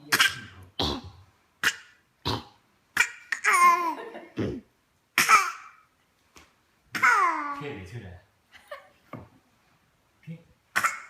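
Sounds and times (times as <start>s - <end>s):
child laughing: 3.4s - 4.6s
child fake-coughing: 5.2s - 5.8s, 7.0s - 7.6s, 10.8s - 11.0s.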